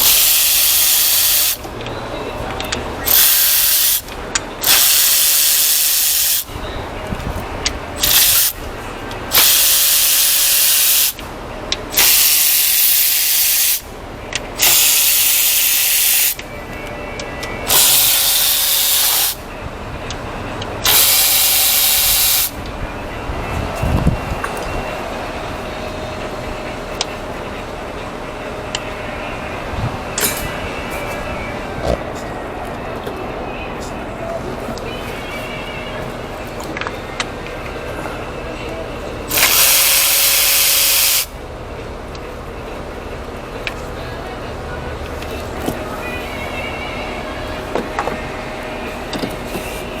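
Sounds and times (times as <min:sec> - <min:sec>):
pressurised jet hissing: 0:00.0 - 0:01.6, 0:03.0 - 0:06.6, 0:08.0 - 0:08.6, 0:09.3 - 0:11.2, 0:11.9 - 0:13.9, 0:14.6 - 0:16.4, 0:17.7 - 0:19.5, 0:20.8 - 0:22.6, 0:39.3 - 0:41.4.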